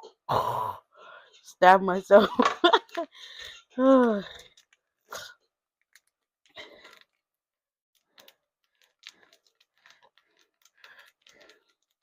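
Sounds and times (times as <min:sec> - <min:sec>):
container clicks and rustles: 0:08.0 - 0:12.0.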